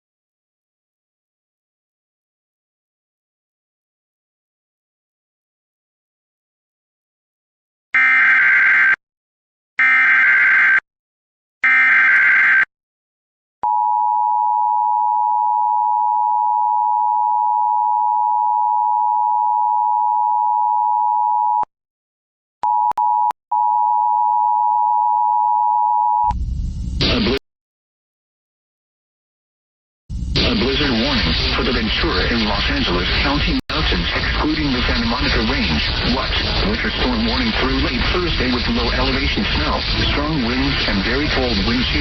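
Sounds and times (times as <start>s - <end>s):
burst of noise: 30.1s - 42.0s.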